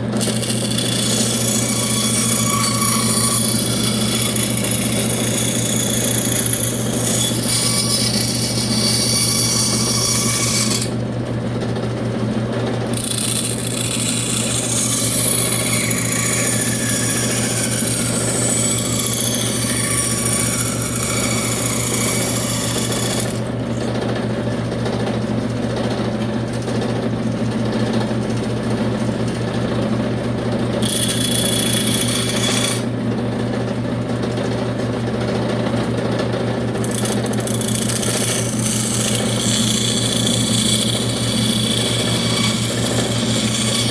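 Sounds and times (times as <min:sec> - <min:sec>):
power tool motor humming: 0:00.0 - 0:11.0, 0:12.9 - 0:23.9, 0:30.8 - 0:32.9, 0:36.8 - 0:43.9.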